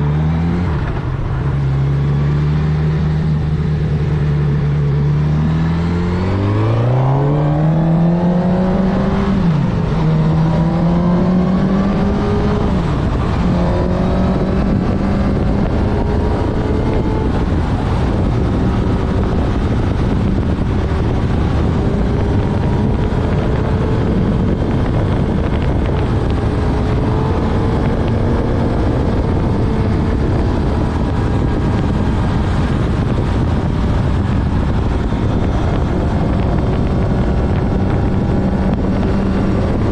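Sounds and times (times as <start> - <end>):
motorcycle engine accelerating: 0.0 - 39.9
wind noise: 0.0 - 39.9.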